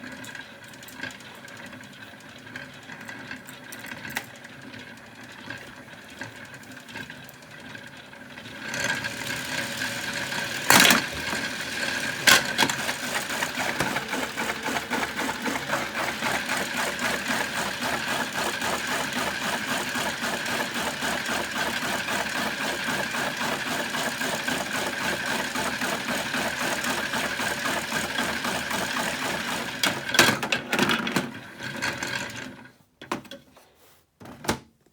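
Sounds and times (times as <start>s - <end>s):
toy washing machine motor whine: 0.0s - 32.6s
objects rattling in a drum: 8.4s - 32.5s.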